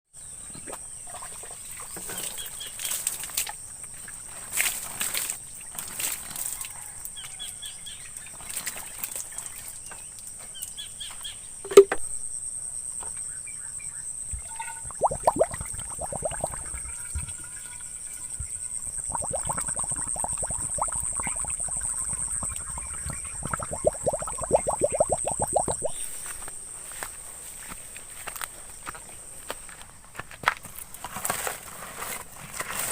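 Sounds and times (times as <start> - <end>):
sharp knock: 11.7 - 12.1
bird chirps: 18.4 - 26.2.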